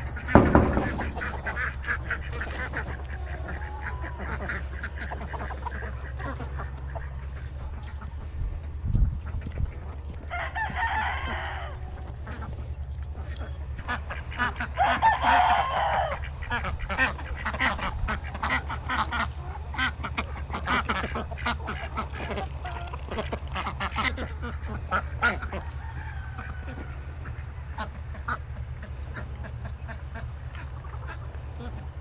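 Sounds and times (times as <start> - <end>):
steady low hum: 0.0 - 2.2
chickens clucking: 0.0 - 32.0
ducks quacking: 0.3 - 8.2.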